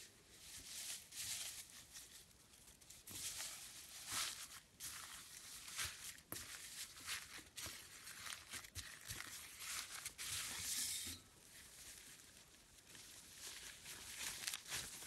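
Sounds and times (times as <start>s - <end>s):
foam slime crackling: 3.0s - 10.5s, 11.5s - 15.0s.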